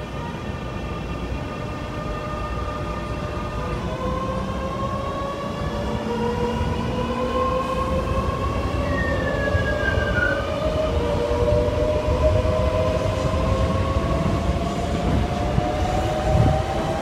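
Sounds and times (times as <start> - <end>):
wheels rumbling on rail: 0.0 - 17.0.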